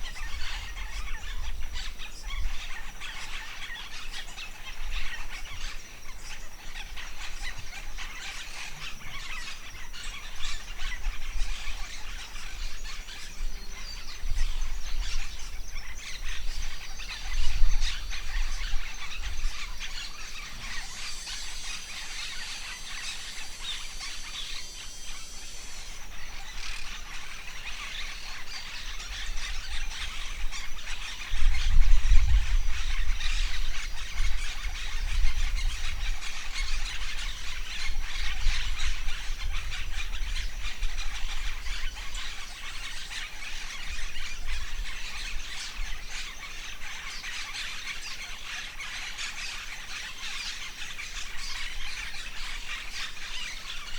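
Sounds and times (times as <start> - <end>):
birds chirping: 0.0 - 53.9
wind rumbling on microphone: 0.0 - 53.9
high-pitched hum: 20.0 - 28.0.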